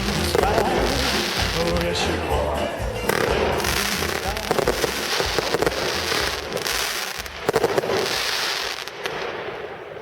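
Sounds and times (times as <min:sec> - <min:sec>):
fireworks crackling and banging: 0:00.0 - 0:10.0.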